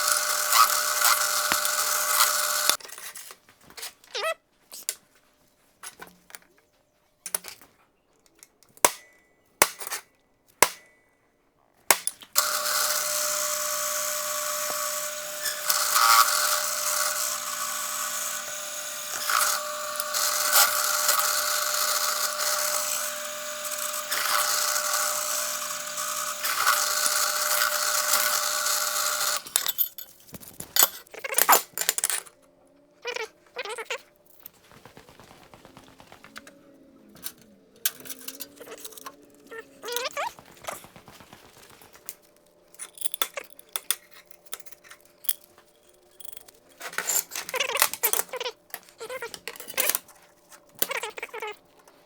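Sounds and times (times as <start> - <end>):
electric power tool running: 0.0 - 2.8, 12.4 - 29.6.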